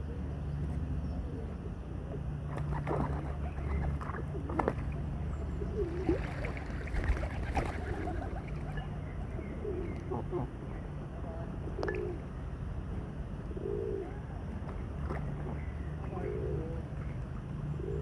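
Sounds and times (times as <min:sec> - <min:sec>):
water birds calling: 0:02.2 - 0:12.4, 0:13.7 - 0:18.0
water birds splashing: 0:02.4 - 0:10.6, 0:14.4 - 0:18.0.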